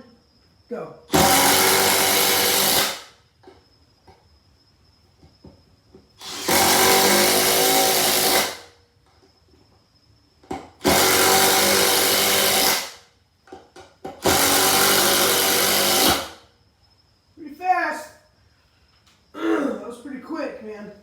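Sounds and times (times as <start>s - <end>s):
impact driver hammering: 1.1s - 3.1s, 10.8s - 13.0s, 14.0s - 16.4s.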